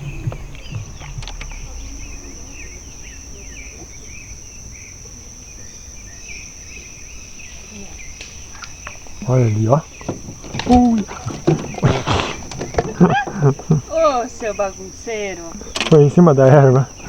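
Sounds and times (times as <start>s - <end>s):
low rumble: 0.0s - 6.0s
high insect drone: 0.0s - 17.0s
small birds chirping: 0.0s - 17.0s.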